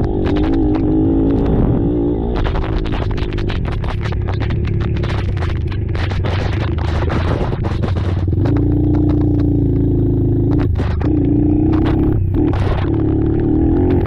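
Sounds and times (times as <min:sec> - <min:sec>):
clattering and scraping: 0:00.0 - 0:09.4
atv engines revving: 0:00.0 - 0:14.0.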